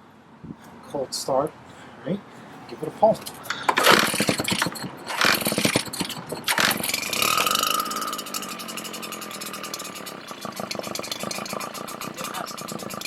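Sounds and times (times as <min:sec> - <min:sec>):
blower engine starting and running: 0:03.2 - 0:13.0
blower fan whine: 0:03.2 - 0:13.0.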